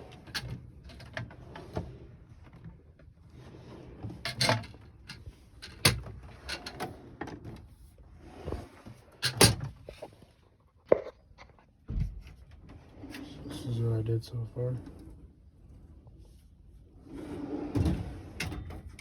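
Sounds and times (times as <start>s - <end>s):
steel drawers opening and shutting: 0.0s - 10.0s, 12.6s - 13.9s, 16.9s - 19.0s.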